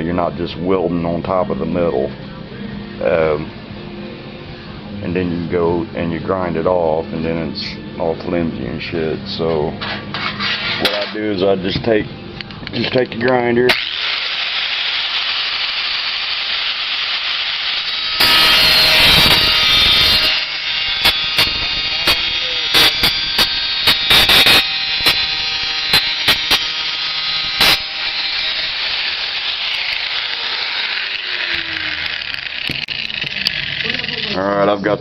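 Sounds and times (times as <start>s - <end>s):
angle grinder on sheet steel: 9.8s - 11.2s, 13.7s - 34.6s.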